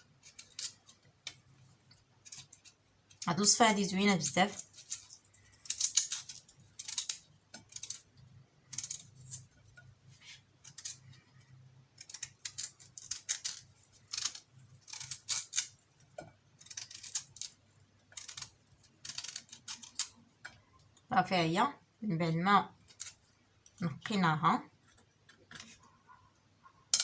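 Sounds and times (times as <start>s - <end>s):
blade scraping turnip skin: 0.2s - 1.0s, 2.2s - 8.1s, 8.7s - 9.6s, 12.0s - 15.8s, 16.6s - 20.2s.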